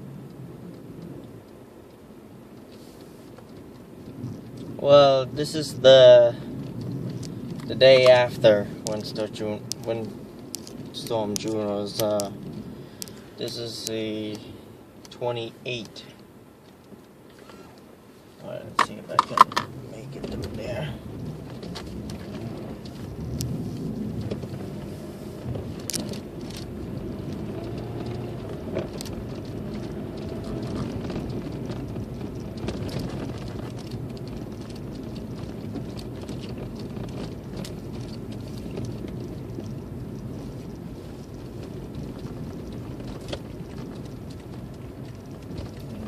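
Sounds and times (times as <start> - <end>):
car engine and tyre rumble: 0.0 - 46.0
sharp knocks and clicks: 18.8 - 20.6.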